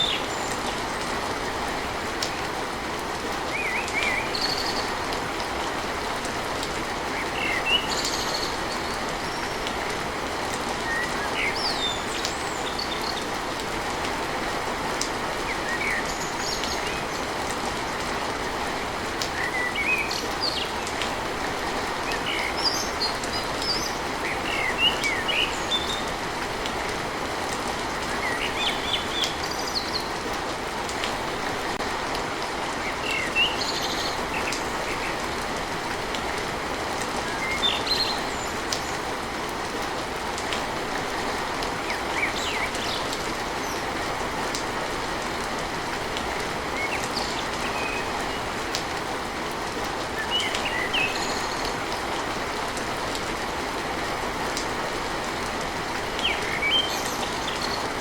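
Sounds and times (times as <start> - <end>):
rain on a tin roof: 0.0 - 58.0
birds chirping: 50.1 - 52.3.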